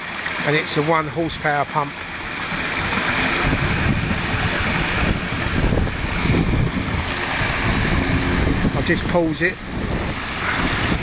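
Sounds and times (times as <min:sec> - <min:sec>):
waterfall splashing over rocks: 0:00.0 - 0:11.0
wind buffeting microphone: 0:01.2 - 0:11.0.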